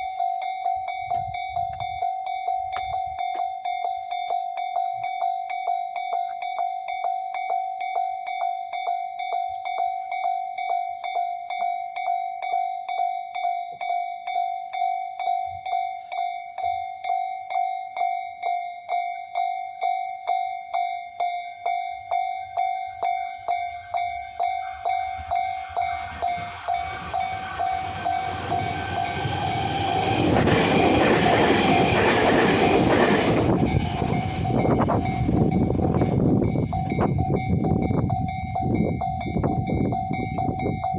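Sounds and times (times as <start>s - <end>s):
level crossing warning bell: 0.0s - 40.9s
train rumbling past: 22.2s - 40.9s.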